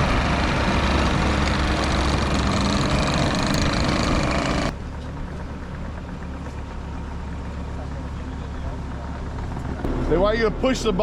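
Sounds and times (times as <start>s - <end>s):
engine running at low revs: 0.0s - 11.0s
loud rushing noise: 9.9s - 11.0s.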